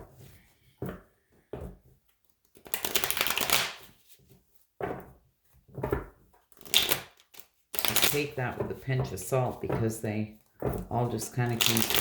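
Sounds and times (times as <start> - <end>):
cards being shuffled: 1.6 - 4.7, 5.8 - 12.0.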